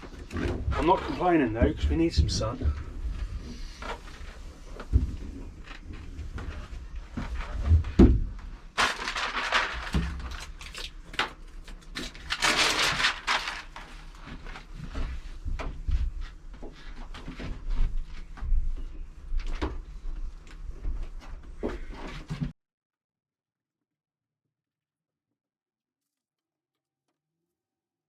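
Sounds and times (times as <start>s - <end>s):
mat rustling: 8.8s - 10.3s.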